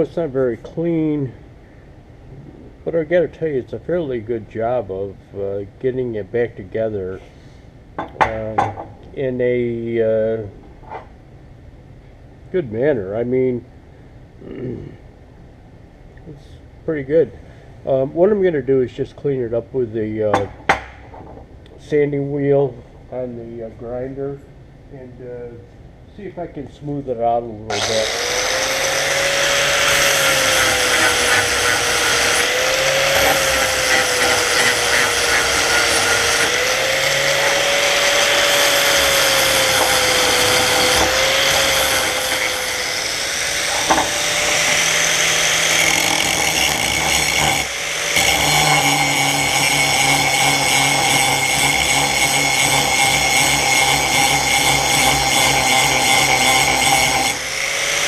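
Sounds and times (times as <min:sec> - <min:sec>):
grinder sanding metal: 0:27.7 - 0:58.0.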